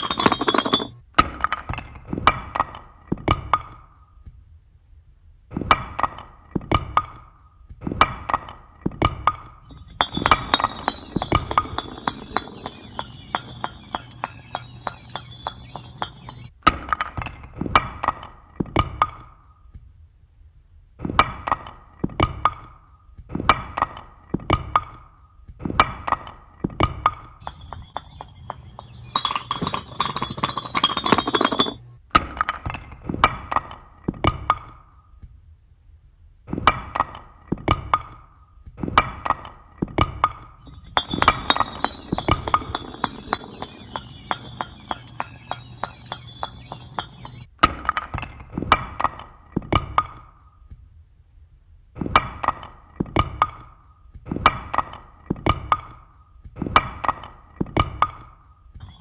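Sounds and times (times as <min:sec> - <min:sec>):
high chime-like ringing: 0:00.0 - 0:01.0, 0:09.7 - 0:16.5, 0:27.4 - 0:32.0, 0:40.7 - 0:47.5
struck blocks and chimes clinking: 0:00.0 - 0:01.0, 0:09.6 - 0:16.5, 0:27.4 - 0:32.0, 0:40.6 - 0:47.5.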